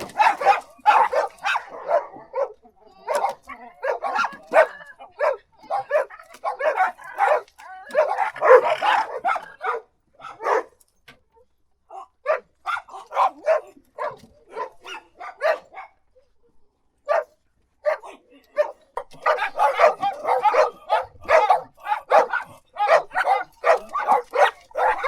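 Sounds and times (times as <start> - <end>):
dog barking: 0.0 - 10.8, 12.0 - 16.3, 17.0 - 25.0.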